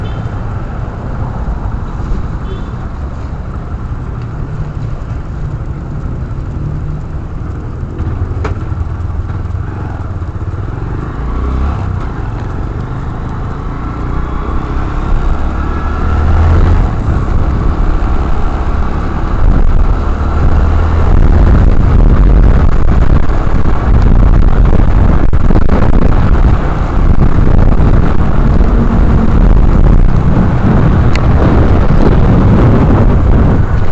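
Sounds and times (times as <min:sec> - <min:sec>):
motorcycle engine and road rumble: 0:00.0 - 0:33.9
wind buffeting microphone: 0:11.3 - 0:33.9.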